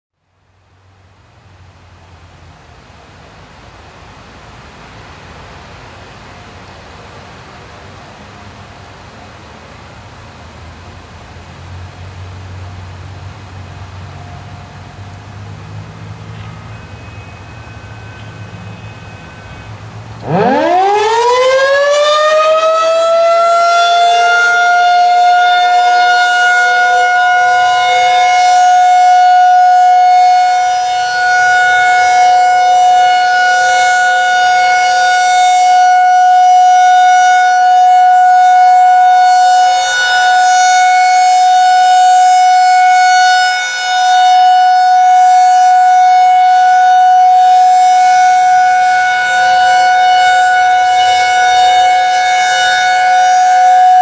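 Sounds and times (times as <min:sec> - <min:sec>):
outdoor warning siren: 0:13.8 - 0:54.0.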